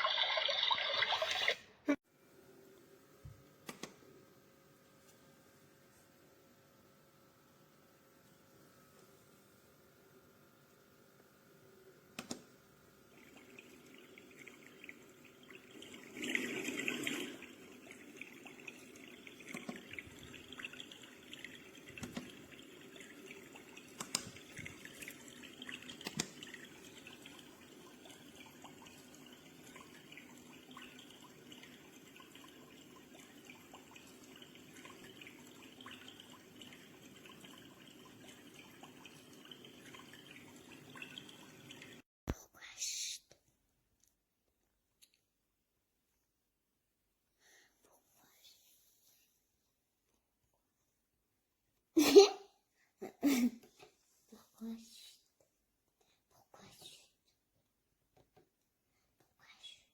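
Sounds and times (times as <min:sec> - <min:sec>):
trickling dripping water: 0:00.0 - 0:01.5, 0:12.2 - 0:42.0.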